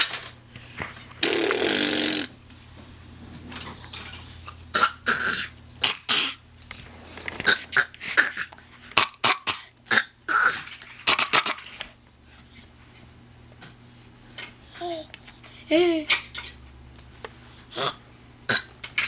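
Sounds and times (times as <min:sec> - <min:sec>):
baby making cough sounds: 0:09.2 - 0:11.6.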